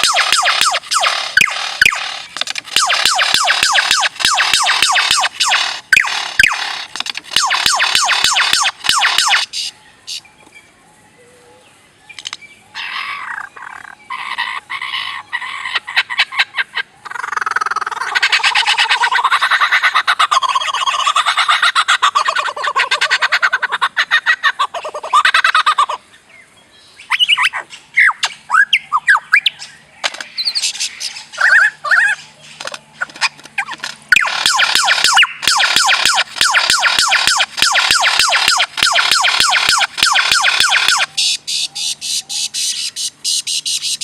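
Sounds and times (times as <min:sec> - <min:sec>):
bird clicking: 0:00.0 - 0:09.5
bird rattling call: 0:00.0 - 0:09.7, 0:30.0 - 0:44.0.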